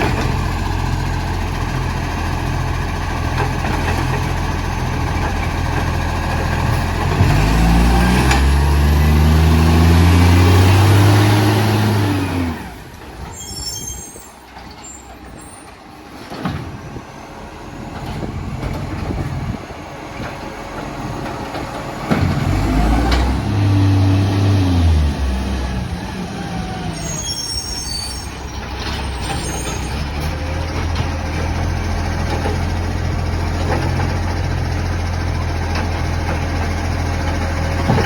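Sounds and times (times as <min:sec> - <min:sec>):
garbage truck engine revving: 0:00.0 - 0:13.3, 0:17.4 - 0:38.0.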